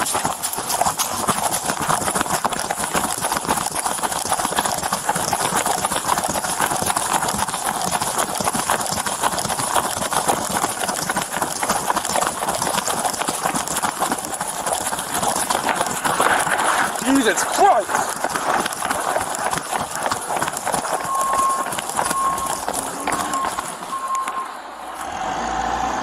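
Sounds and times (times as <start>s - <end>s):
running footfalls: 0.0s - 25.1s
gear rubbing against camera: 14.3s - 25.0s.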